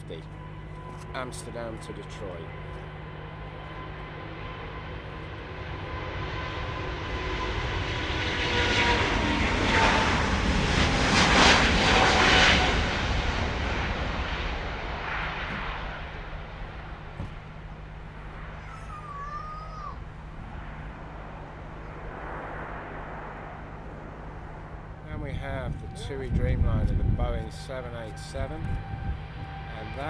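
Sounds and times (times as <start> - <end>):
jet engine whine: 0.0 - 30.0
jet engines roaring: 0.0 - 30.0.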